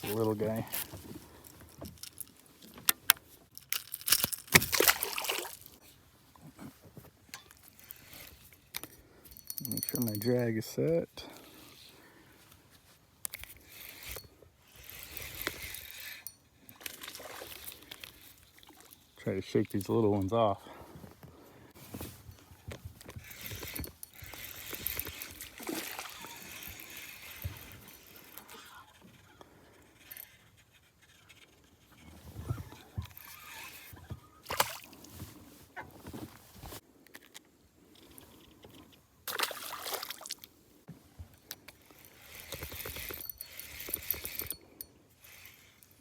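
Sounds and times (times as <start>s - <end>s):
fishing reel ratcheting: 3.6s - 5.7s, 7.4s - 10.4s, 13.2s - 19.0s, 23.0s - 31.6s, 33.0s - 33.9s, 41.7s - 46.0s.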